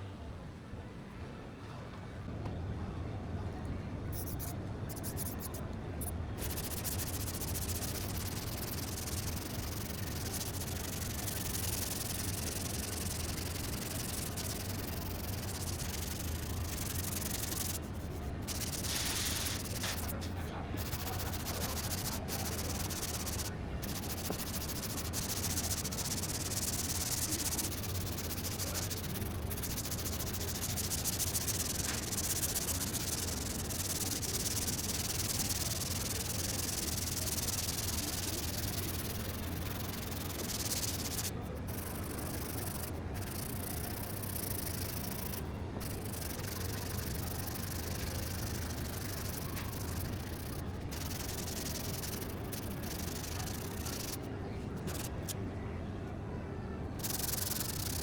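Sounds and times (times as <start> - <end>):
sanding abrasive rub: 6.4 - 54.2.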